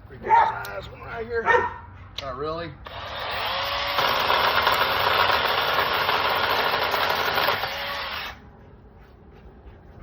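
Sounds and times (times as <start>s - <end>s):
battery chainsaw whining: 2.8s - 8.4s
chainsaw cutting through wood: 2.8s - 8.4s.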